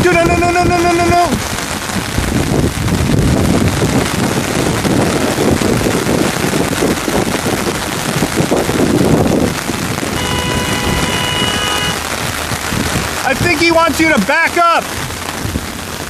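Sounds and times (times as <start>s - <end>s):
rain on an umbrella: 0.0s - 16.0s
car horn blast: 10.1s - 12.1s.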